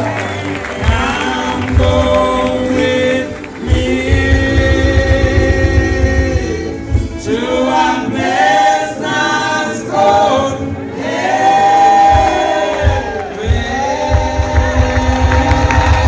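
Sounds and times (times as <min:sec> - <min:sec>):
gospel choir singing: 0:00.0 - 0:16.0
low beat: 0:00.8 - 0:07.4, 0:12.0 - 0:16.0.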